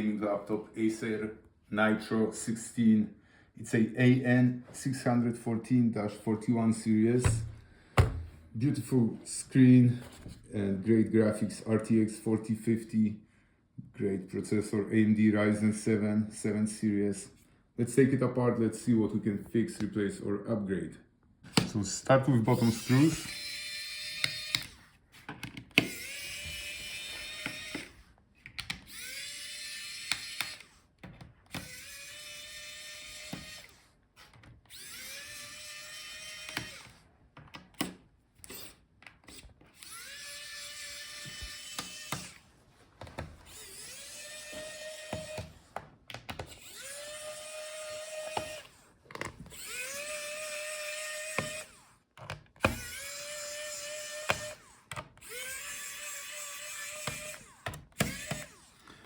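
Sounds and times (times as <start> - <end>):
electric screwdriver whine: 22.4 - 24.8, 25.8 - 28.0, 28.8 - 30.8, 31.5 - 33.9, 34.7 - 37.0, 38.4 - 42.5, 43.4 - 45.7, 46.4 - 48.9, 49.5 - 52.0, 52.6 - 59.0.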